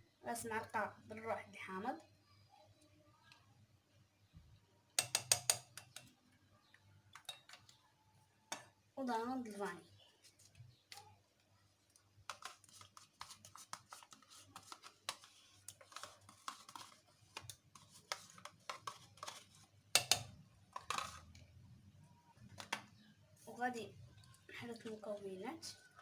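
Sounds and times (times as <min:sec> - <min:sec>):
spoon clicking on container: 0:05.0 - 0:06.1, 0:20.0 - 0:21.2
spoon scraping: 0:05.0 - 0:06.1, 0:12.2 - 0:21.5.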